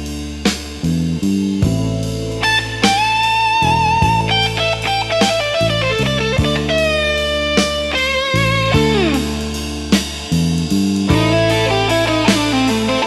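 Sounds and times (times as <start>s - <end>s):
backing band: 0.0s - 13.0s
bass line: 0.0s - 13.0s
electric guitar blues solo: 2.4s - 9.7s, 11.1s - 13.0s.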